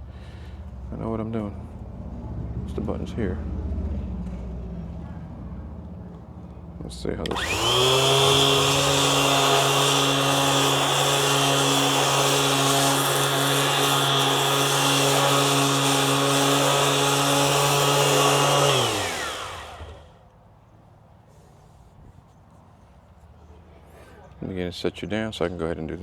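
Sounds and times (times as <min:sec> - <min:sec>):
sander motor running: 0:07.2 - 0:20.2.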